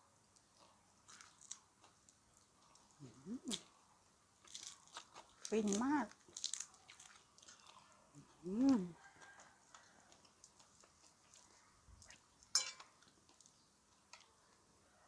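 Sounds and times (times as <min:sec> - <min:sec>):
person humming: 0:03.0 - 0:03.6, 0:08.4 - 0:09.0
cutlery scraping on a plate: 0:12.6 - 0:12.9.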